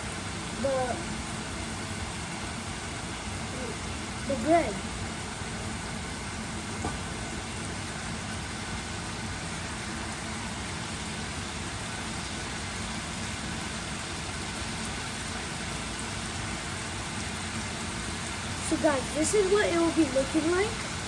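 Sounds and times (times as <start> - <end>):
chicken sizzling hiss: 0.0 - 21.0.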